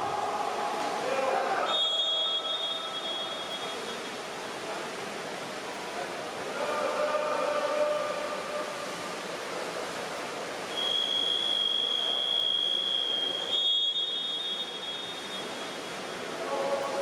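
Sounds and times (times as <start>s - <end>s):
pool hall noise: 0.0s - 17.0s
high steady signal tone: 1.7s - 4.3s, 10.2s - 17.0s.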